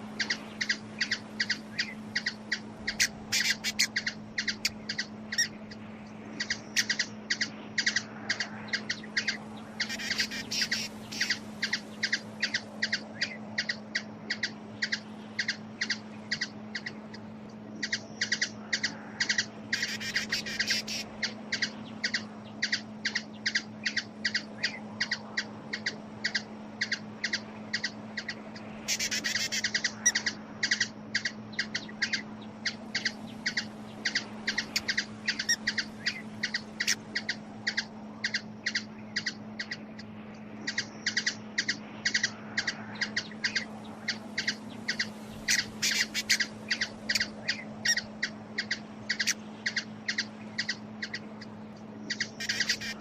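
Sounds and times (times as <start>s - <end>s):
steady low hum: 0.0s - 53.0s
hummingbird chipping: 0.2s - 5.5s, 40.7s - 51.2s, 52.1s - 53.0s.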